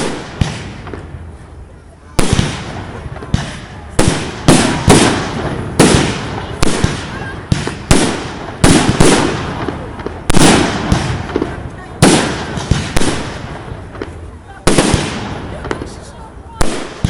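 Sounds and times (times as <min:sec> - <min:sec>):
fireworks bursting: 0:00.0 - 0:17.0.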